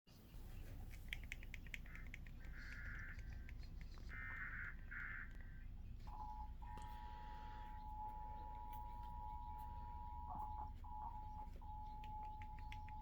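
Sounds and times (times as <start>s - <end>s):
low hum: 0.3s - 13.0s
two-tone attention signal: 6.1s - 13.0s.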